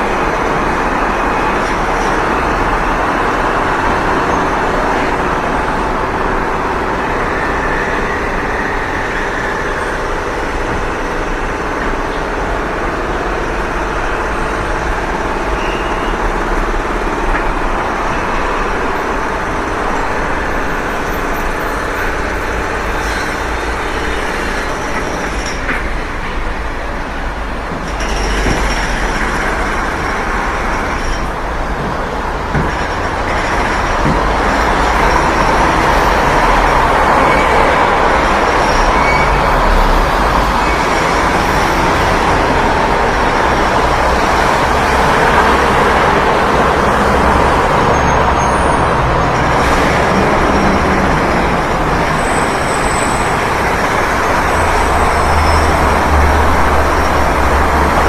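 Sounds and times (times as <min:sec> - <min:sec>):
construction work din: 0:00.0 - 0:58.0
heavy vehicles: 0:00.0 - 0:58.0.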